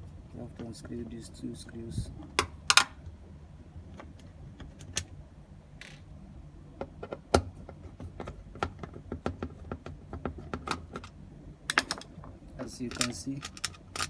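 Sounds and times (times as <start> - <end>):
screwdriver and metal parts clicking: 12.7 - 14.0.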